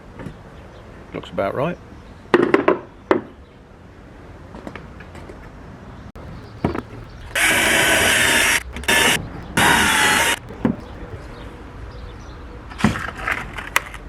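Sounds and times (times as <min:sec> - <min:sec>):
power drill boring: 0:06.2 - 0:11.2.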